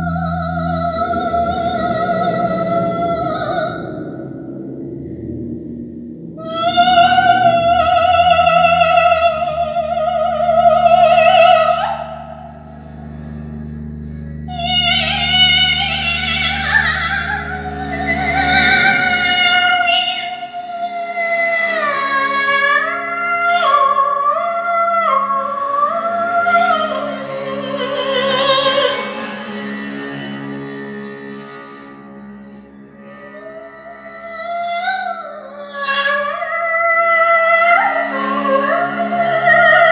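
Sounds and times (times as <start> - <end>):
operatic singing with vibrato: 0.0 - 4.5, 6.3 - 13.4, 14.1 - 31.9, 33.0 - 39.9
low drone notes: 0.0 - 39.9.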